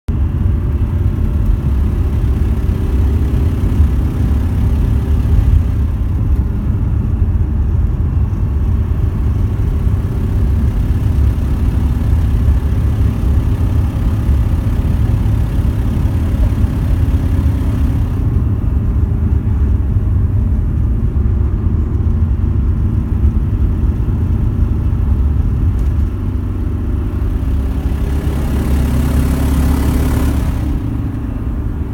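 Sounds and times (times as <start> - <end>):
van engine rumbling: 0.1 - 31.9.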